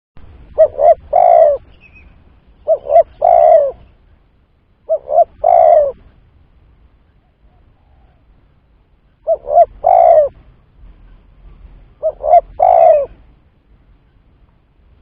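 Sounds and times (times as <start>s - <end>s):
dove cooing: 0.5s - 1.7s, 2.6s - 3.9s, 4.8s - 6.1s, 9.2s - 10.4s, 12.0s - 13.2s.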